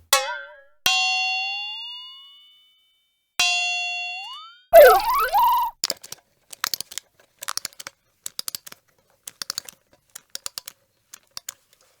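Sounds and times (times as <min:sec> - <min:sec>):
dry clicks and crackles: 0:05.8 - 0:12.0.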